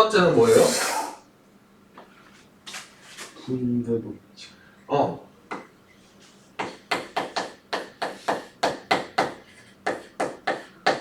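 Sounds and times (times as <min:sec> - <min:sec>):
writing taps and scrapes on board: 0:06.6 - 0:11.0.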